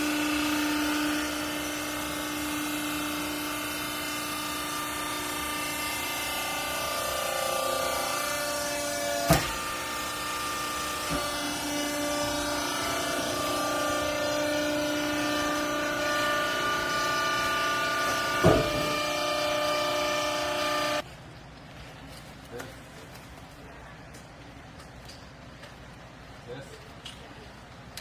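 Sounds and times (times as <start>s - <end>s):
hydraulic pump whine: 0.0s - 21.0s
sharp knock: 18.4s - 19.0s.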